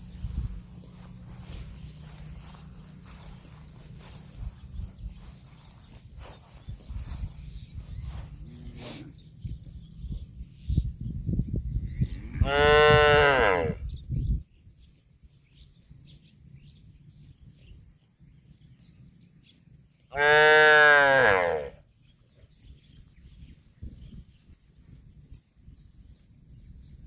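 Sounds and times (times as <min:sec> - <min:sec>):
low rumble: 0:00.0 - 0:12.4
cow mooing: 0:12.3 - 0:13.8, 0:20.2 - 0:21.8.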